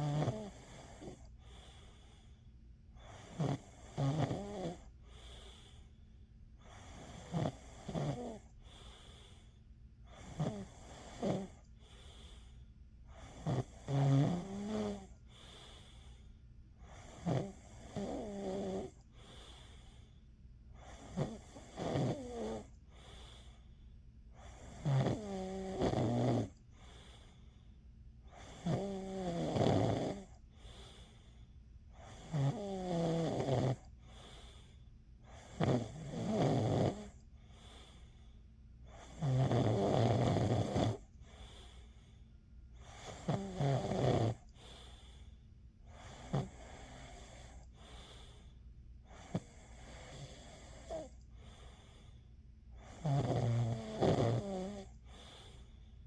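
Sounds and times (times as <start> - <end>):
person snoring: 0.0 - 1.3, 3.0 - 4.9, 6.7 - 8.6, 10.1 - 11.6, 13.2 - 15.2, 16.9 - 19.0, 20.8 - 22.8, 24.4 - 26.6, 28.3 - 30.9, 32.0 - 33.9, 35.3 - 37.2, 39.0 - 41.0, 42.8 - 44.5, 45.9 - 47.9, 52.8 - 55.5.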